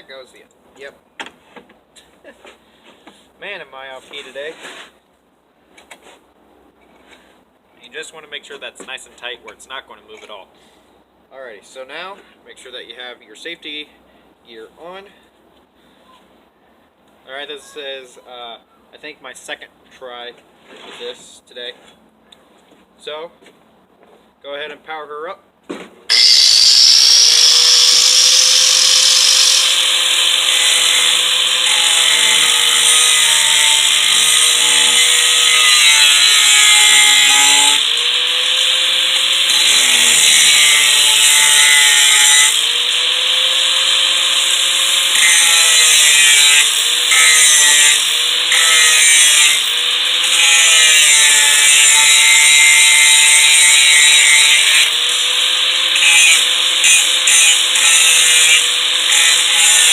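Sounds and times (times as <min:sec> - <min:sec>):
angle grinder grinding metal: 0:26.1 - 0:59.9.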